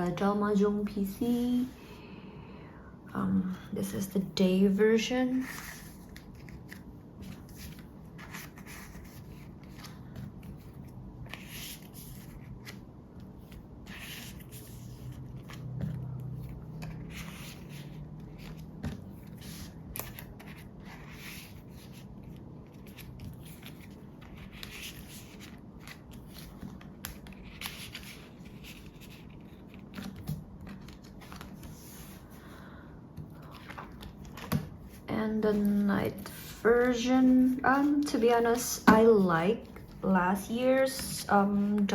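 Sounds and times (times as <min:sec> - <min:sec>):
plastic sleeves rustling: 0:05.3 - 0:35.9.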